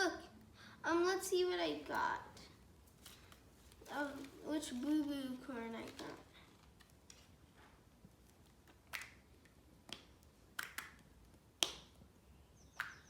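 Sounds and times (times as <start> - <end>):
plastic packaging crinkling: 2.9 - 7.4.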